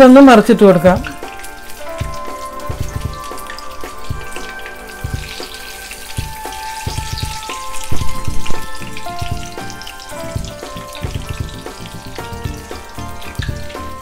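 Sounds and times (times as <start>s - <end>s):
background music: 0.0s - 14.0s
food sizzling in hot oil: 0.0s - 14.0s
low thumps: 10.3s - 13.7s.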